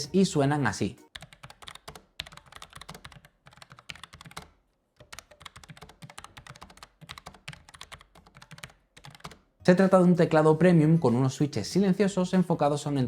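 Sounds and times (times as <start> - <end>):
mechanical keyboard typing: 1.1 - 9.5.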